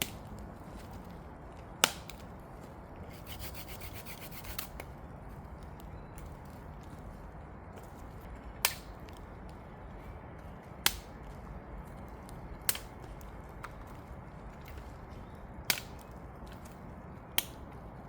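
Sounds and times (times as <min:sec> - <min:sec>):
firewood snapping by hand: 0:00.0 - 0:02.4, 0:03.3 - 0:05.0, 0:08.6 - 0:09.6, 0:10.7 - 0:11.4, 0:12.1 - 0:14.0, 0:15.6 - 0:17.8.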